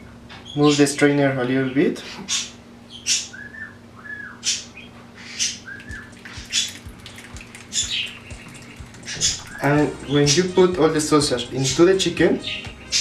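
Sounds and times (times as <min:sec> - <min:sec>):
squeaky chirps: 0:07.7 - 0:10.1.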